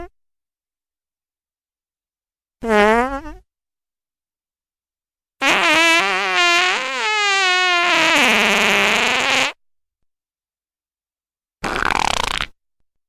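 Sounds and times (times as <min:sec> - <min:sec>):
comic fart sound effects: 0:02.6 - 0:03.5, 0:05.4 - 0:09.6, 0:11.6 - 0:12.6.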